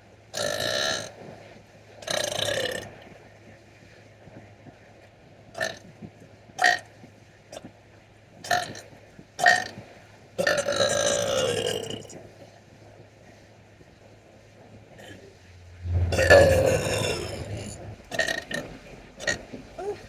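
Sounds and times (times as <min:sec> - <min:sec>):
steady low hum: 0:15.0 - 0:20.0.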